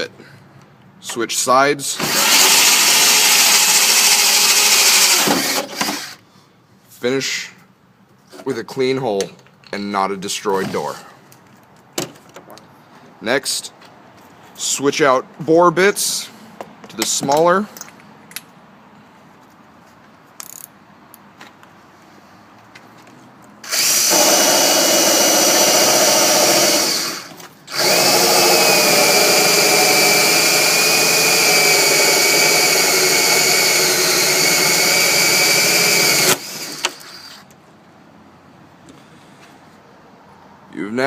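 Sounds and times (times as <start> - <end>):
power drill boring through wood: 2.0 - 6.2, 23.6 - 37.5.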